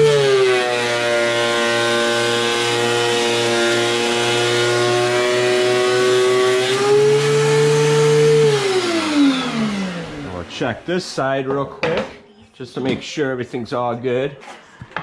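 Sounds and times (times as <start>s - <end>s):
thickness planer motor running: 0.0s - 10.8s.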